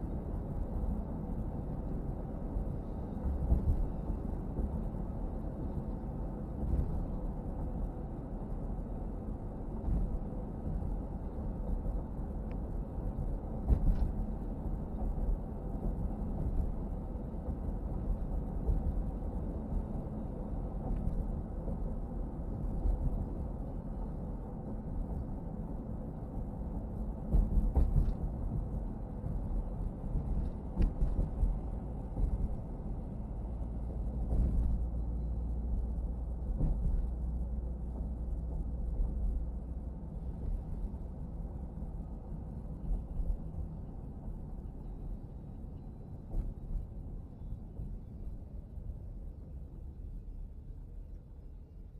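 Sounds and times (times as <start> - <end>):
car interior road and engine rumble: 0.0 - 51.9
thumps inside car: 13.5 - 14.3, 27.2 - 32.6, 34.2 - 34.8, 36.4 - 37.2.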